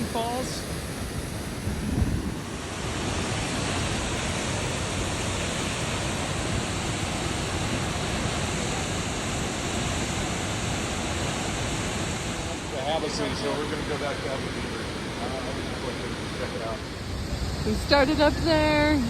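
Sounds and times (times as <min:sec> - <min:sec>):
wind rumble on microphone: 0:00.0 - 0:13.0
waterfall rushing: 0:00.0 - 0:18.0.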